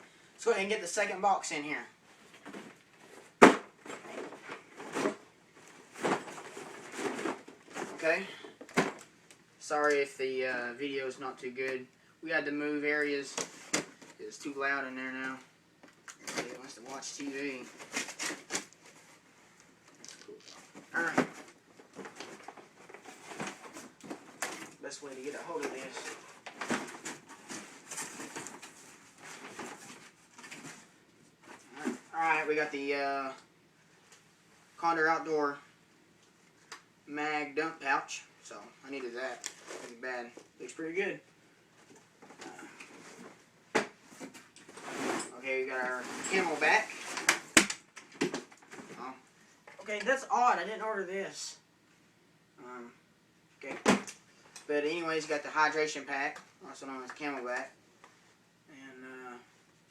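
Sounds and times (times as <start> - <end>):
cardboard box thump: 3.4 - 3.7
packaging rustling and crinkling: 19.9 - 30.9, 44.1 - 49.0
cardboard box scraping and rustling: 44.7 - 47.2.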